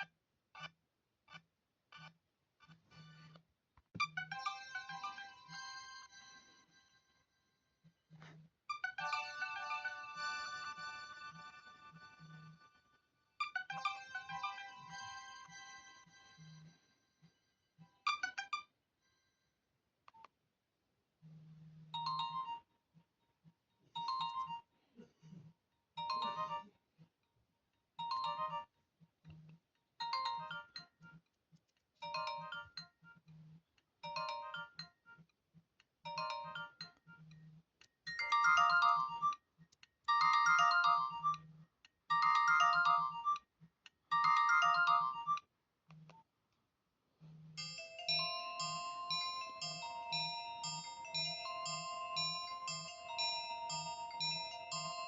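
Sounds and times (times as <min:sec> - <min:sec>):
busier ringtone: 0:04.3 - 0:06.8, 0:08.7 - 0:12.6, 0:13.4 - 0:16.9, 0:22.0 - 0:22.7, 0:24.0 - 0:24.7, 0:26.0 - 0:26.7, 0:28.0 - 0:28.7, 0:30.0 - 0:31.1, 0:32.0 - 0:33.2, 0:34.0 - 0:35.0, 0:36.1 - 0:37.4, 0:38.1 - 0:39.4, 0:40.1 - 0:41.5, 0:42.1 - 0:43.4, 0:44.1 - 0:45.4, 0:47.6 - 0:55.0
beeping ringtone melody: 0:22.0 - 0:22.6, 0:26.0 - 0:26.7, 0:30.1 - 0:30.8, 0:32.0 - 0:32.8, 0:34.0 - 0:34.8, 0:36.1 - 0:37.2, 0:38.1 - 0:39.4, 0:40.1 - 0:41.4, 0:42.1 - 0:43.4, 0:44.1 - 0:45.4, 0:47.6 - 0:55.0.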